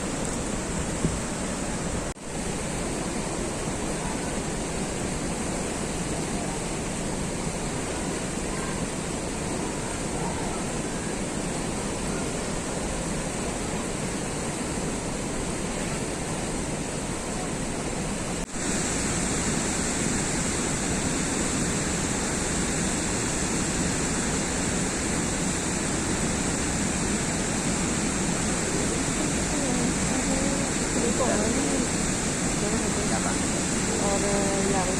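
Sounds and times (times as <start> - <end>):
water pouring down waterfall: 0.0 - 34.9.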